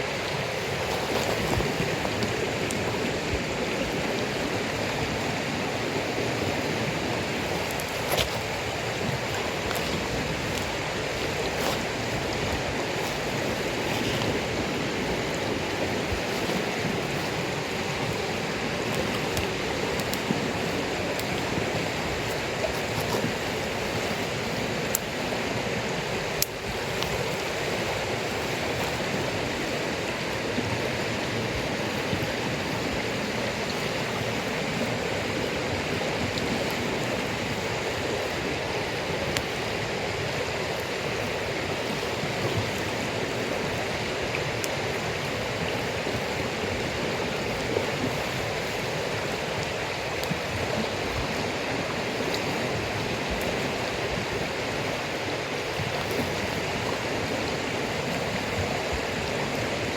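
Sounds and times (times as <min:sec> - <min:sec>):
steady rushing noise: 0:00.0 - 0:59.9
campfire pops: 0:18.8 - 0:23.5.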